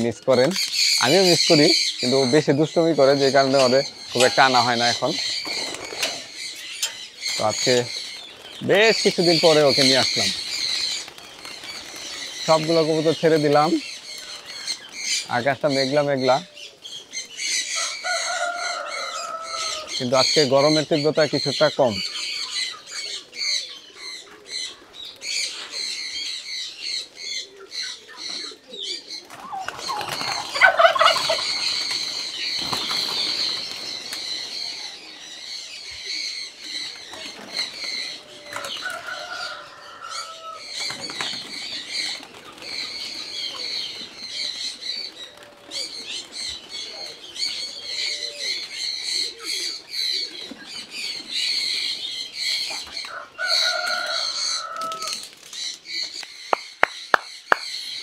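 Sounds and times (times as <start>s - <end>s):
small birds chirping: 0.0s - 58.0s
bird wingbeats: 5.1s - 6.4s, 7.3s - 12.8s, 29.2s - 34.8s.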